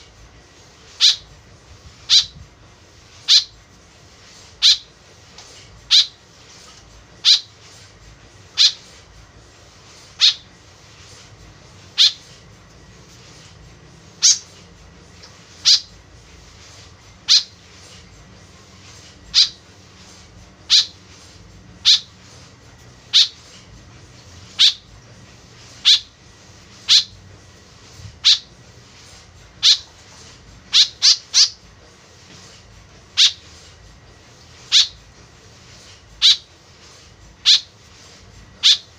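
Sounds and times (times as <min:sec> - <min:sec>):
bird giving sharp calls: 0:01.0 - 0:01.2, 0:02.1 - 0:02.4, 0:03.3 - 0:03.6, 0:04.6 - 0:04.9, 0:05.9 - 0:06.2, 0:07.2 - 0:07.5, 0:08.6 - 0:08.8, 0:10.2 - 0:10.5, 0:11.9 - 0:12.3, 0:14.2 - 0:14.5, 0:15.6 - 0:15.9, 0:17.2 - 0:17.6, 0:19.3 - 0:19.6, 0:20.6 - 0:21.0, 0:21.8 - 0:22.1, 0:23.1 - 0:23.4, 0:24.6 - 0:24.9, 0:25.8 - 0:26.1, 0:26.8 - 0:27.2, 0:28.2 - 0:28.5, 0:29.6 - 0:29.9, 0:30.7 - 0:31.6, 0:33.2 - 0:33.4, 0:34.7 - 0:35.0, 0:36.2 - 0:36.5, 0:37.4 - 0:37.7, 0:38.6 - 0:38.9.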